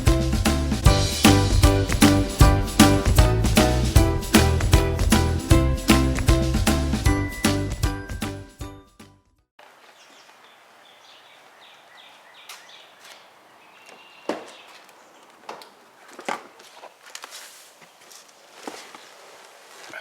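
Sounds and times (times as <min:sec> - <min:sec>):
bird-like chirps: 0:09.9 - 0:15.2.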